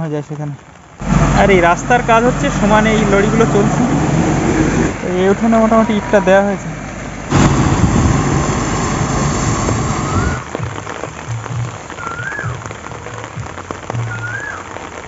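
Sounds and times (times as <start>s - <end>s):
steady rain falling: 0.0s - 15.0s
low rumble: 1.0s - 10.7s.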